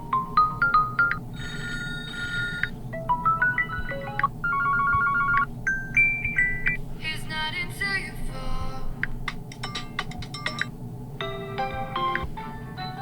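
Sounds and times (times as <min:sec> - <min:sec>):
smartphone ringtone melodies: 0:00.0 - 0:06.8.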